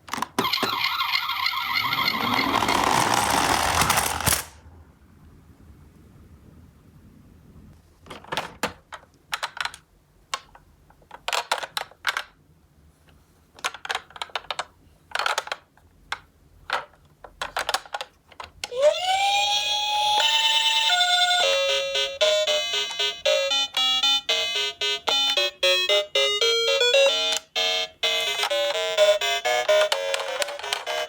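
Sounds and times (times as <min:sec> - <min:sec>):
toy cars clicking together: 0:02.2 - 0:04.6, 0:10.4 - 0:12.4, 0:13.6 - 0:18.8.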